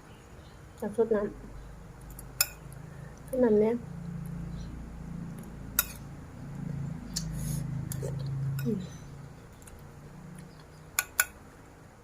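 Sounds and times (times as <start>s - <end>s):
person humming while chewing: 7.1s - 8.9s.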